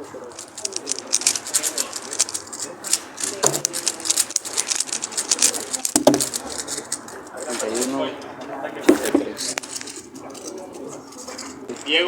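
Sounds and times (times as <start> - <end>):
puzzle cube plastic clicks: 0.3 - 7.9, 8.8 - 10.6.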